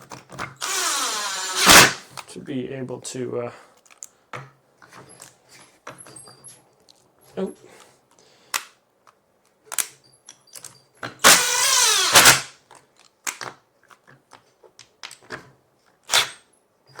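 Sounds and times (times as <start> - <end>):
cordless drill motor whine: 0.6 - 2.0, 11.2 - 12.4
clicks and knocks of parts handled: 3.8 - 7.1, 7.8 - 11.2, 12.6 - 16.4.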